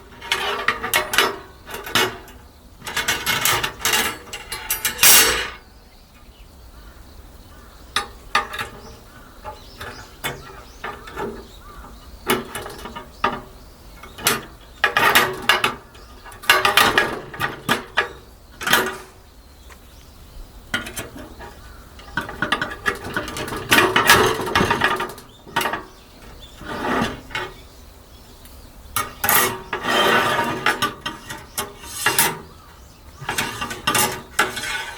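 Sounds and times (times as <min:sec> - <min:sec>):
scraping or rustling: 0:00.0 - 0:05.7, 0:20.7 - 0:27.8, 0:29.0 - 0:34.9
objects clicking and clattering: 0:20.7 - 0:26.4.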